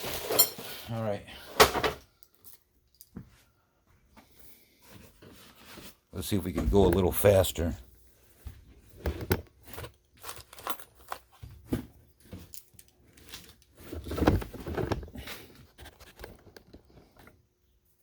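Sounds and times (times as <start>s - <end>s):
small metal parts clinking: 9.8s - 11.4s.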